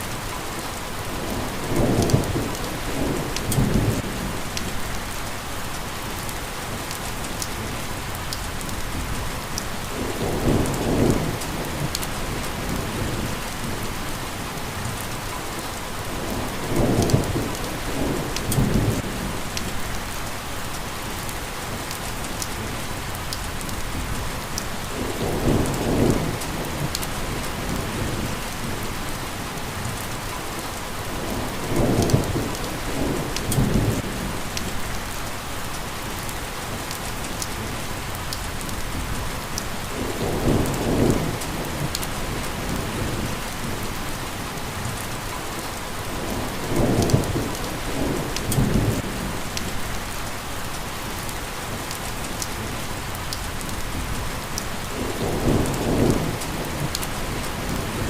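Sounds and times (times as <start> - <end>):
steady rain hissing: 0.0 - 58.0.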